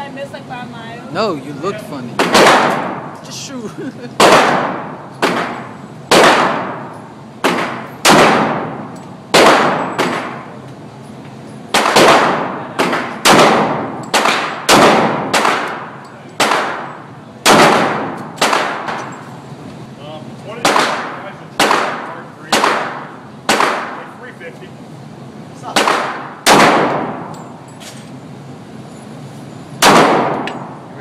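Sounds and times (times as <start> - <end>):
handgun shots echoing: 9.4 - 10.4, 11.8 - 19.1, 25.8 - 27.5, 29.8 - 30.7.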